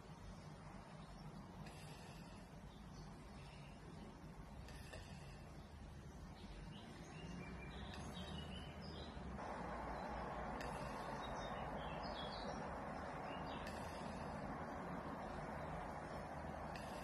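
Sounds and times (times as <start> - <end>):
faint bird chirps: 0.8 - 9.3, 9.9 - 17.0
low rumble: 7.8 - 17.0
steady rushing noise: 7.8 - 17.0.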